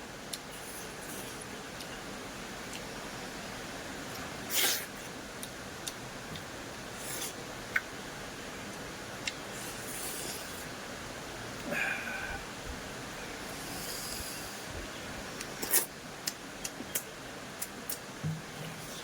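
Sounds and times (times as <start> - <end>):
background hiss: 0.0 - 19.0
breathy sniff: 13.5 - 14.7.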